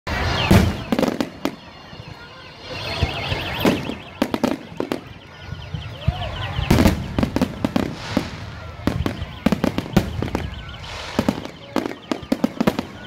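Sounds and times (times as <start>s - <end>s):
fireworks bangs: 0.1s - 13.0s
warbling firework whistle: 0.1s - 13.0s.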